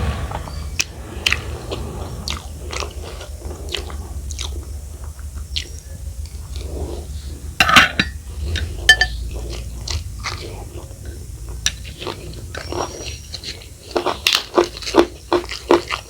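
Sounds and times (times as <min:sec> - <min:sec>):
chewing with wet mouth clicks: 0:03.6 - 0:07.2, 0:08.4 - 0:16.0.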